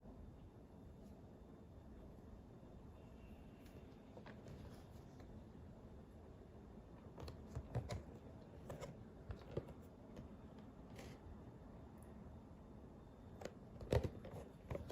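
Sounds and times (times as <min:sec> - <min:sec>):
packaging clicks and taps: 0:13.4 - 0:14.9.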